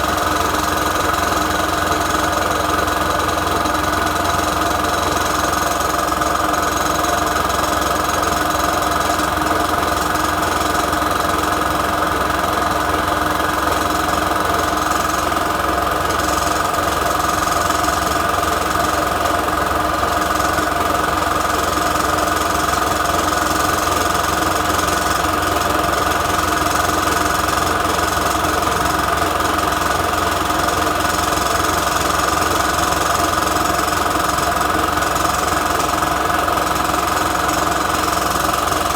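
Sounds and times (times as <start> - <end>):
air compressor running: 0.0 - 38.9.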